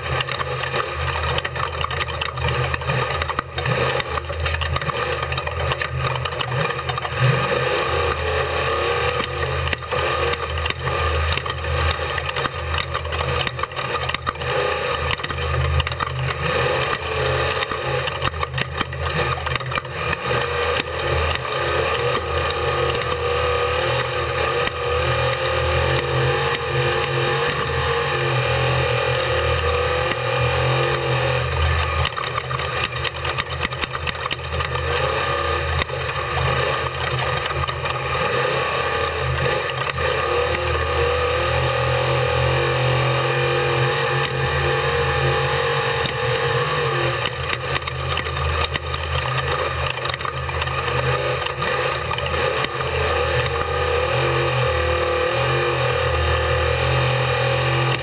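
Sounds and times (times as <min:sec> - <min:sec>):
race truck engine revving: 0:00.0 - 0:58.0
truck rattling and knocking: 0:28.9 - 0:38.6, 0:45.6 - 0:53.9.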